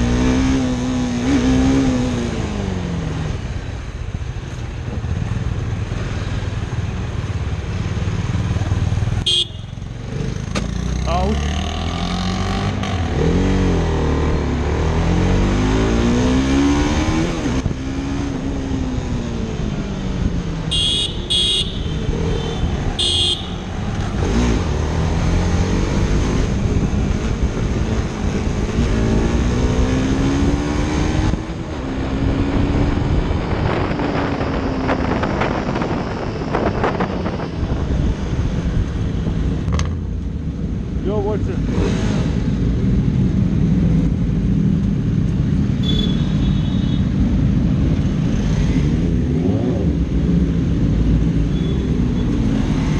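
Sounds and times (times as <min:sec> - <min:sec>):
motorcycle engines accelerating: 0:09.9 - 0:52.9.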